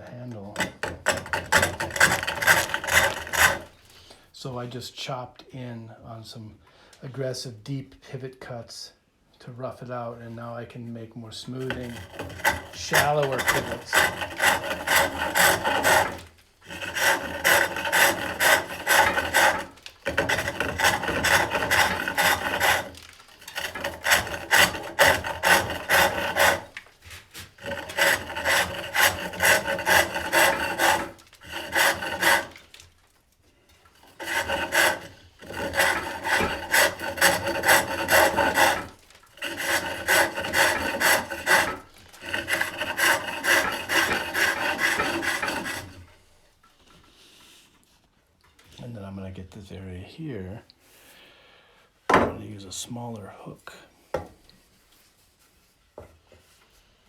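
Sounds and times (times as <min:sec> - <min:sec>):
hook tool rasping on wood: 0:00.3 - 0:03.8, 0:11.6 - 0:32.8, 0:34.0 - 0:46.2.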